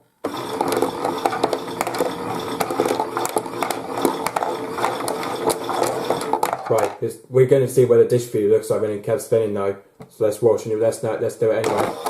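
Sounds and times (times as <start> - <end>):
toy washing machine running: 0.2 - 7.0, 11.7 - 12.0.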